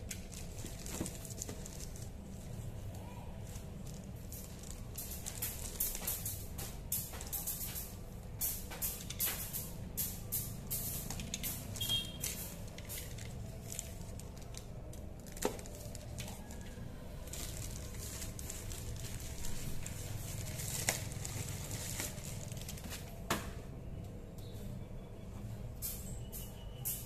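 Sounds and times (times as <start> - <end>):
plastic and cardboard crinkling: 0.0 - 7.8, 11.1 - 23.3.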